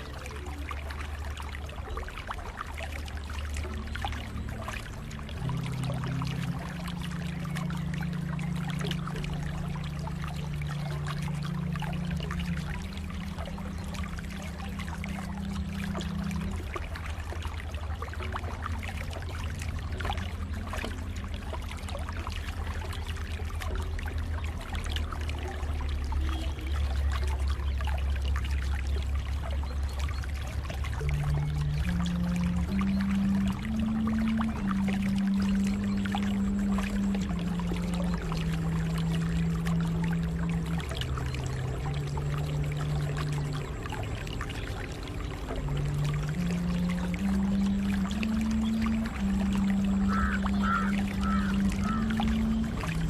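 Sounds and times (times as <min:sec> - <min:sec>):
low steady hum: 0:00.0 - 0:53.0
water trickling and splashing: 0:00.0 - 0:53.0.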